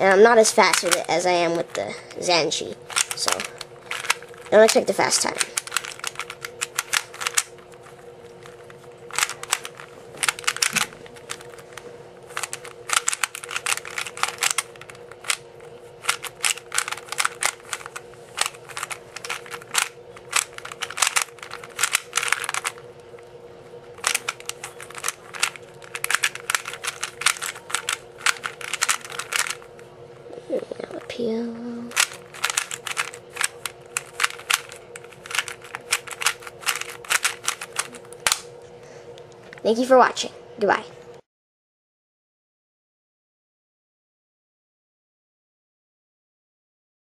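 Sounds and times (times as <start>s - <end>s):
steady low hum: 0.0s - 41.2s
puzzle cube plastic clicks: 0.4s - 2.3s, 2.9s - 22.9s, 24.0s - 29.8s, 31.9s - 38.5s.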